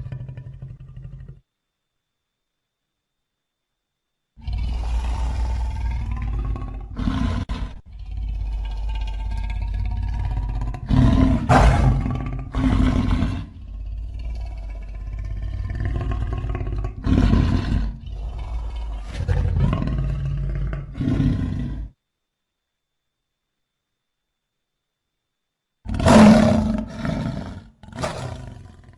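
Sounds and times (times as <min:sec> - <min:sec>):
monster growls and roars: 0:04.4 - 0:21.9
deep rumble: 0:07.9 - 0:16.8.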